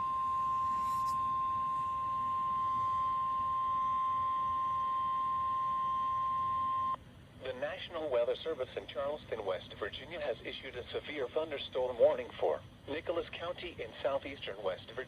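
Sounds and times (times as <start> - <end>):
high warning alarm beep: 0.0 - 7.0.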